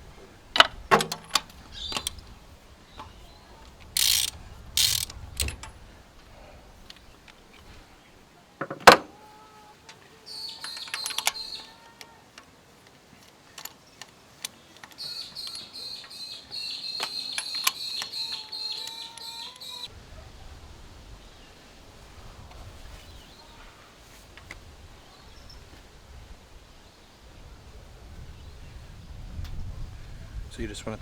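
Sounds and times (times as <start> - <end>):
ratchet wrench clicking: 4.0 - 5.7.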